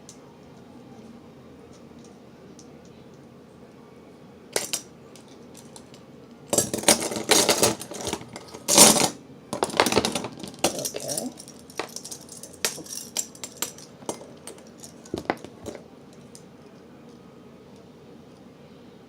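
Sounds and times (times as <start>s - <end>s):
metal clinking and scraping: 4.6s - 16.3s.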